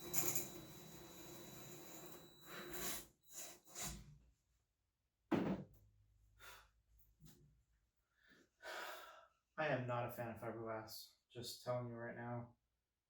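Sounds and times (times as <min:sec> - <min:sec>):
cordless drill motor whine: 0:00.0 - 0:03.1.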